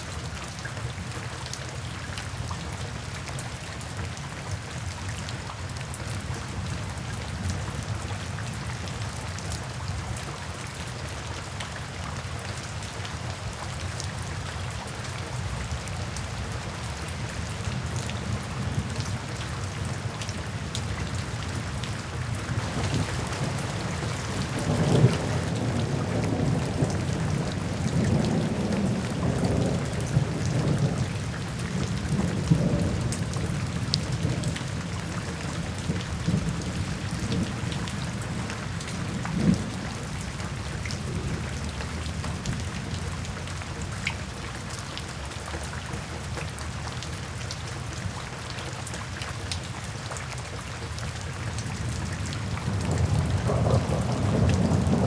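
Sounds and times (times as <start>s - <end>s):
steady rain falling: 0.0s - 55.0s
rolling thunder: 22.4s - 39.9s, 51.8s - 55.0s.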